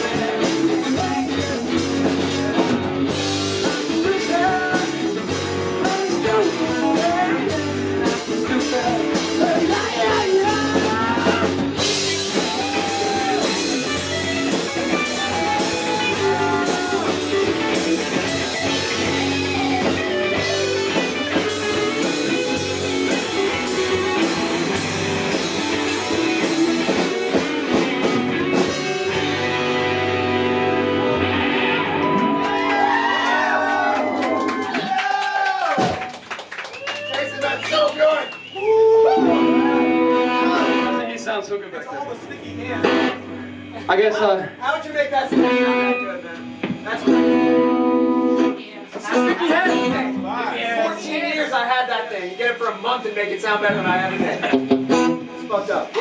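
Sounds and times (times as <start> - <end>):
person singing: 0.0 - 1.9, 3.6 - 11.6, 15.0 - 17.3
live rock band playing: 0.0 - 35.0, 35.7 - 51.7, 52.3 - 56.0.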